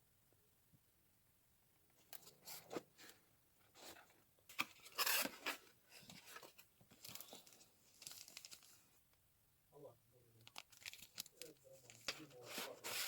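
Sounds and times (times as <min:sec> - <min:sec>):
packaging rustling and crinkling: 0:03.8 - 0:08.9, 0:10.4 - 0:13.0
packaging tearing: 0:10.5 - 0:13.0.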